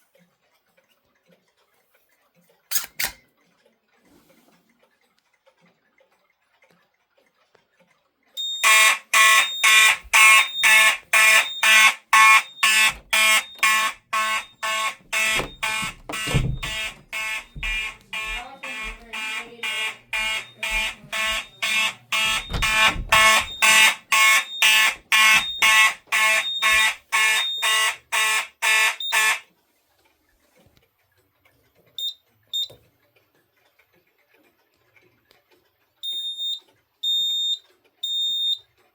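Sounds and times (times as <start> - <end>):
fire alarm horn pulsing: 8.4 - 29.4, 36.0 - 38.6
short high beeps: 8.4 - 29.4, 36.0 - 38.6.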